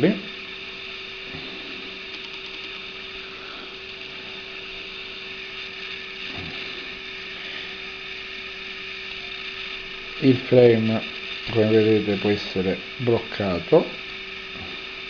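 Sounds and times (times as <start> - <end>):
low hum: 0.0 - 15.0
steady hiss: 0.0 - 15.0.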